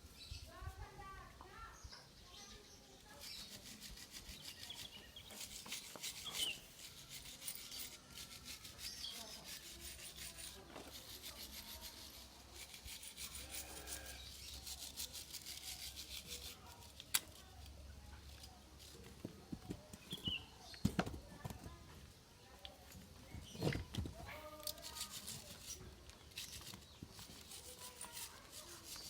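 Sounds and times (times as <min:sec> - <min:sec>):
stiff brush scrubbing metal parts: 0:03.0 - 0:20.5, 0:23.4 - 0:29.0.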